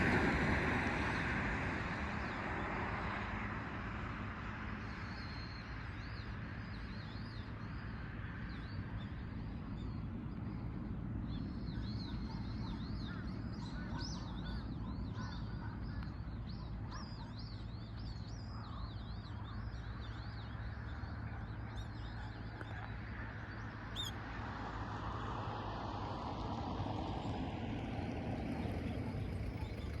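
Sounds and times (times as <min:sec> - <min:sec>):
distant traffic: 0:00.0 - 0:30.0
small birds chirping: 0:04.2 - 0:25.2, 0:27.2 - 0:30.0.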